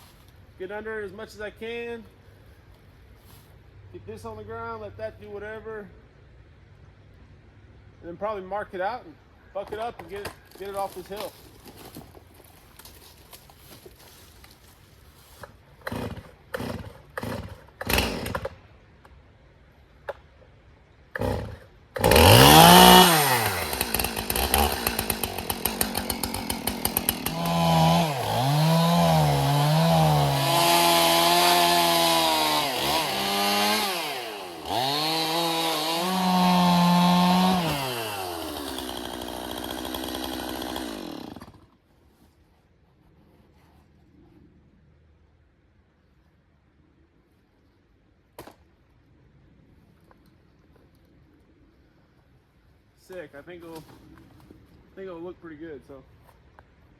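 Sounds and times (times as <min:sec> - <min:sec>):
chainsaw cutting wood: 0:15.4 - 0:18.6, 0:21.1 - 0:41.8.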